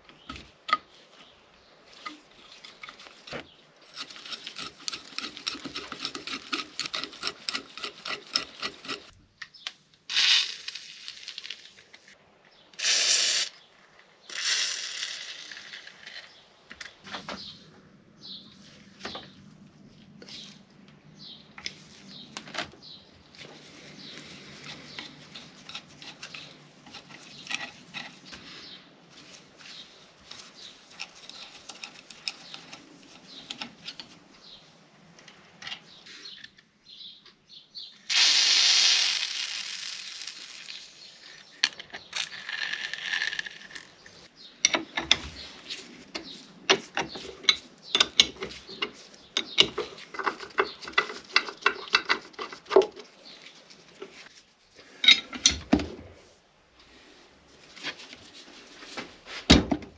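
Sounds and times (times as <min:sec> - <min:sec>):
ratchet-like clicks: 0:03.9 - 0:09.1
loud hiss: 0:12.8 - 0:13.6, 0:38.1 - 0:41.2.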